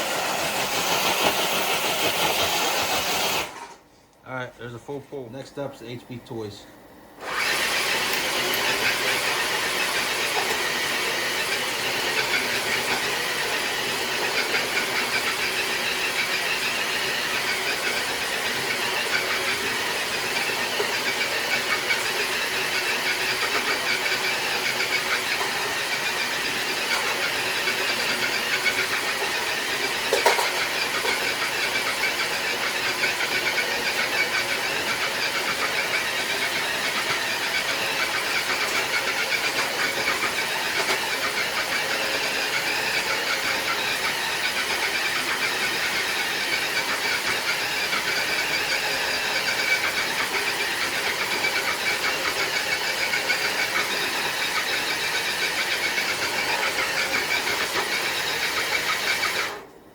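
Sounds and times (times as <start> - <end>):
electric motor whine and grind: 7.2 - 59.6
sled scraping on concrete: 28.7 - 31.7.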